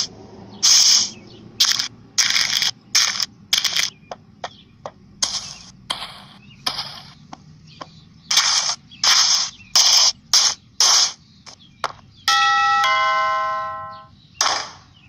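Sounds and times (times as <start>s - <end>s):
toy hissing crackly bursts: 0.0s - 3.9s, 8.3s - 11.2s
faint toy clicks: 0.6s - 4.0s.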